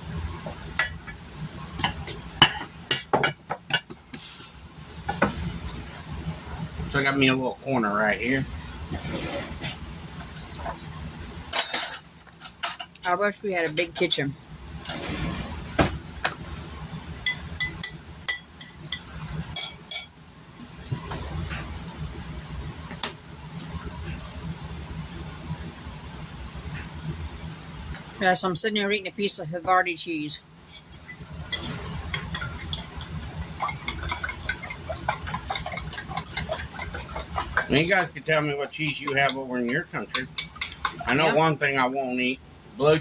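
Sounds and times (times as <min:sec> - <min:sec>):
steady low hum: 0:00.0 - 0:43.0
kitchenware clinking: 0:01.8 - 0:04.0, 0:11.5 - 0:14.2, 0:17.2 - 0:20.2, 0:30.7 - 0:38.1, 0:38.7 - 0:41.5.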